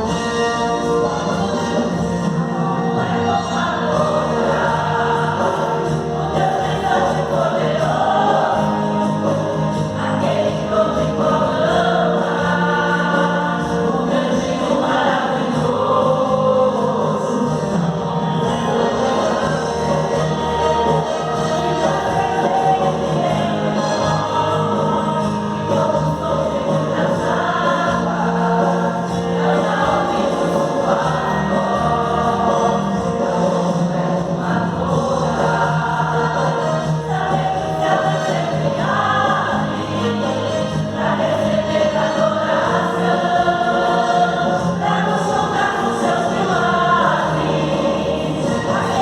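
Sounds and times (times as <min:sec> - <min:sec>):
choir singing gospel song: 0:00.0 - 0:49.0
low musical accompaniment: 0:00.0 - 0:49.0.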